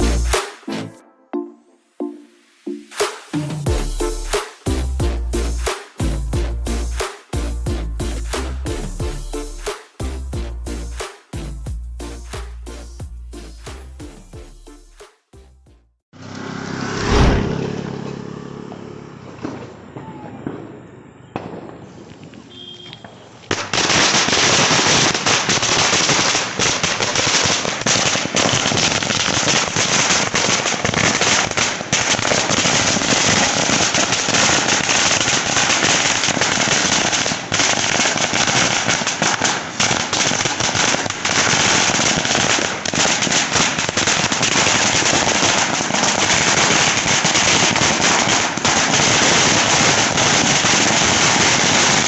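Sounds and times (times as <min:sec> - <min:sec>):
firecrackers rattling bangs: 0:18.7 - 0:52.0.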